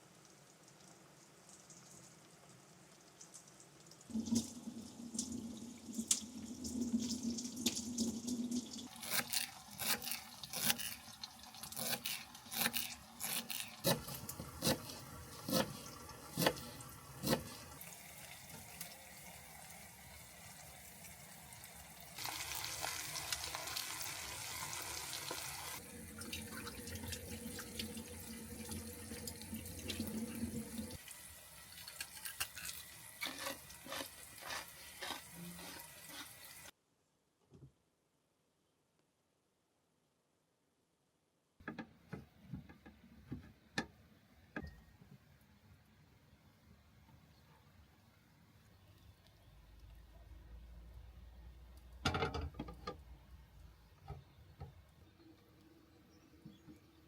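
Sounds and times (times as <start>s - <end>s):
tap water running into sink: 3.4s - 9.6s, 22.1s - 32.2s.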